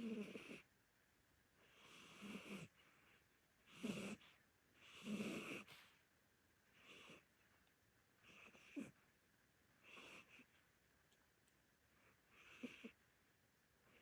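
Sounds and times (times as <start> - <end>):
cat snoring: 0.0 - 0.7, 1.6 - 2.8, 3.7 - 5.8, 6.8 - 7.2, 8.2 - 9.0, 9.8 - 10.4, 12.3 - 13.0.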